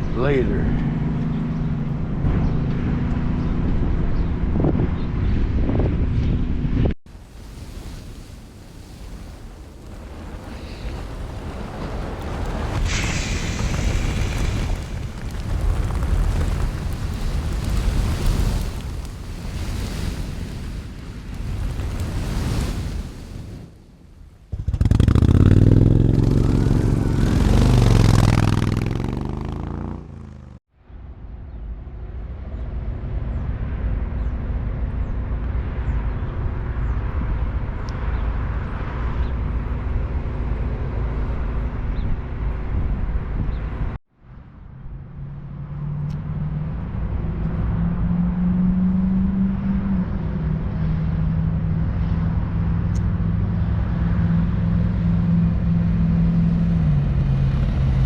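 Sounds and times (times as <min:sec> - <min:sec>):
motorcycle engines revving: 0:24.5 - 0:30.6.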